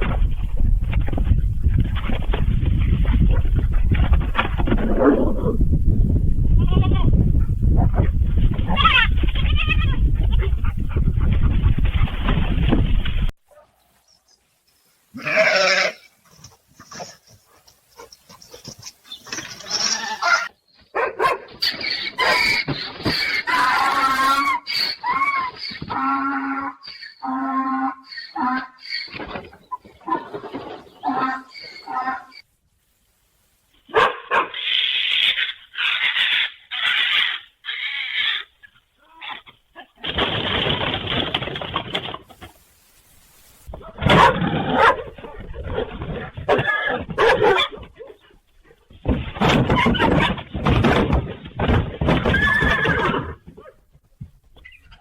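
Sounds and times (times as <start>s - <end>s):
animal making rough calls: 34.5s - 40.6s.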